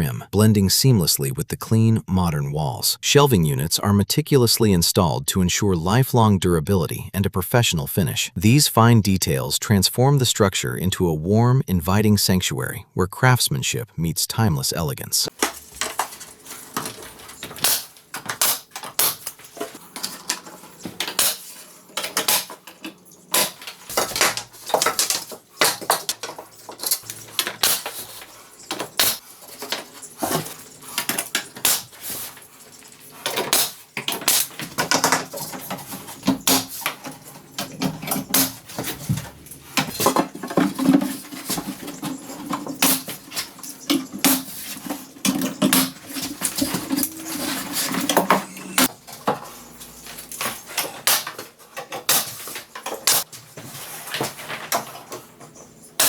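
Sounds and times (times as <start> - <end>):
wood and metal pieces clattering: 15.3 - 56.0.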